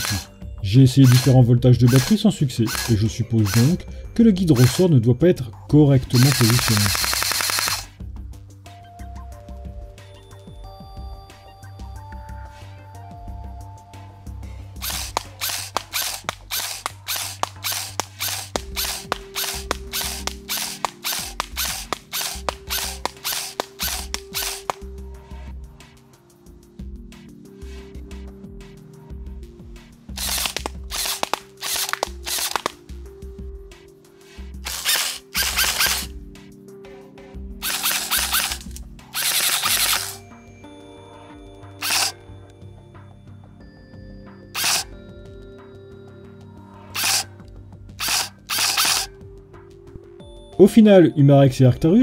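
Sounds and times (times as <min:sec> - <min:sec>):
airsoft rifle bursts: 0:00.0 - 0:00.3, 0:01.0 - 0:03.8, 0:04.5 - 0:04.9, 0:06.0 - 0:07.9, 0:14.8 - 0:24.8, 0:30.2 - 0:32.8, 0:34.6 - 0:36.1, 0:37.6 - 0:40.2, 0:41.8 - 0:42.2, 0:44.6 - 0:44.9, 0:47.0 - 0:47.3, 0:48.0 - 0:49.1
spring noise: 0:06.1 - 0:07.9, 0:14.8 - 0:24.8, 0:34.7 - 0:36.1, 0:37.6 - 0:40.2, 0:48.0 - 0:49.1
airsoft gun single shots: 0:06.2 - 0:07.9, 0:30.2 - 0:32.8, 0:34.7 - 0:36.1, 0:37.6 - 0:40.2, 0:44.6 - 0:44.9, 0:48.0 - 0:49.1.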